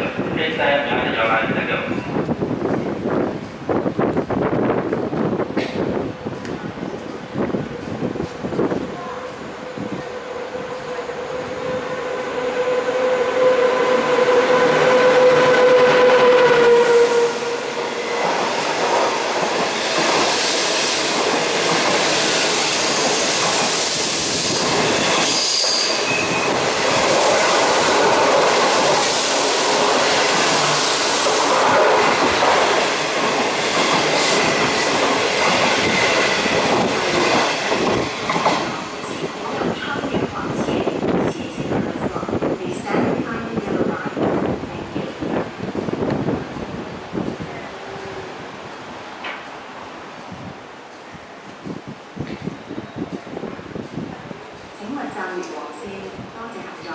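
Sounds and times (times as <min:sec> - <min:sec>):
electric locomotive whine: 0:00.0 - 0:56.9
train wheel and rail noise: 0:00.0 - 0:56.9
high wheel squeal: 0:24.0 - 0:26.9.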